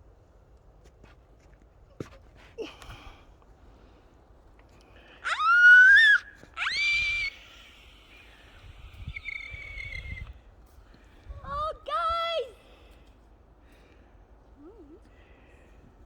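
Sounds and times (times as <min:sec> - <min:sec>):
child squealing: 0:05.2 - 0:07.5.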